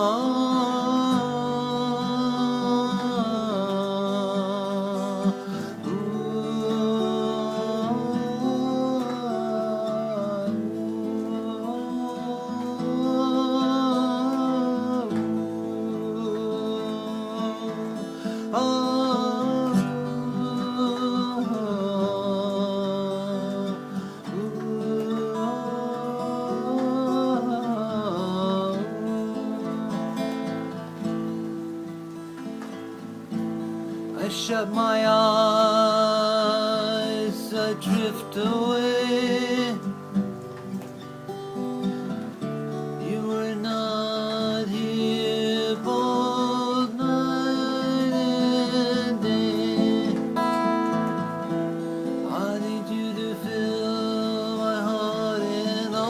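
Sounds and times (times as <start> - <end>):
guitar accompaniment: 0.0 - 56.0
sliding held melody line: 41.6 - 56.0.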